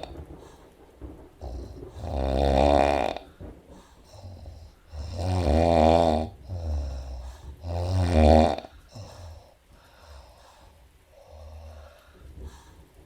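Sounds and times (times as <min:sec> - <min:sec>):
soft breath: 0:00.0 - 0:13.0
woman snoring: 0:01.4 - 0:03.4, 0:04.0 - 0:09.6.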